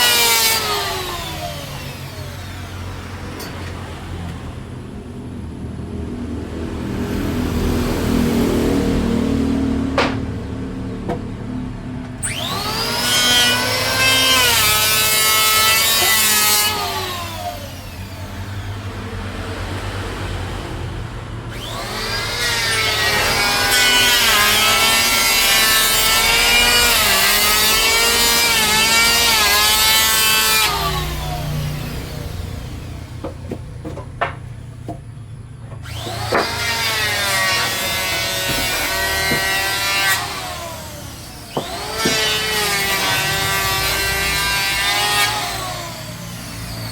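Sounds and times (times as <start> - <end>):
power tool cutting wood: 0.0 - 3.8, 12.2 - 19.9, 21.5 - 35.0, 35.7 - 46.9.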